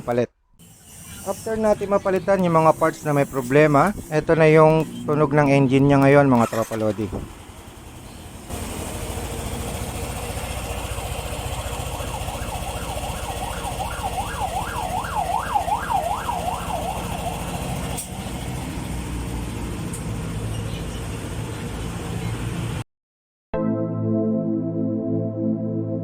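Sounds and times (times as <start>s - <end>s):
scooter engine running: 4.6s - 21.8s
siren wailing: 10.6s - 18.0s.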